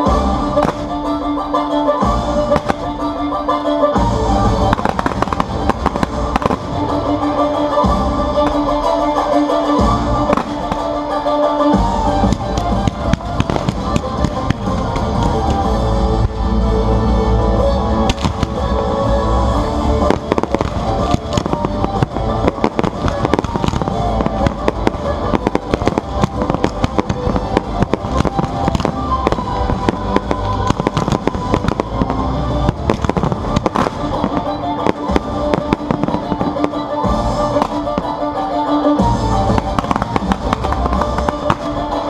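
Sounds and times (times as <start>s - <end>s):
fireworks bursting and crackling: 0.0s - 16.8s, 18.0s - 42.0s
loud music: 0.0s - 42.0s.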